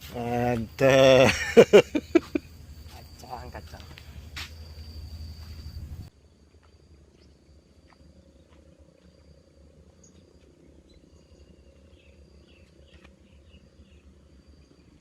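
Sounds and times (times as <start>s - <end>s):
high insect note: 0.0s - 6.1s
low steady rumble: 1.5s - 15.0s.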